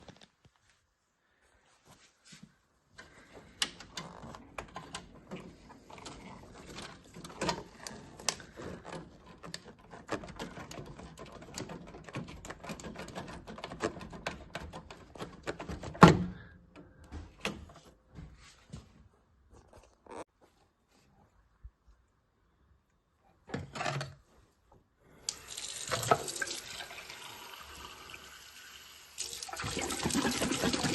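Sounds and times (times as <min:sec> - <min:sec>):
hands clicking and tapping on casing: 0:07.2 - 0:16.0.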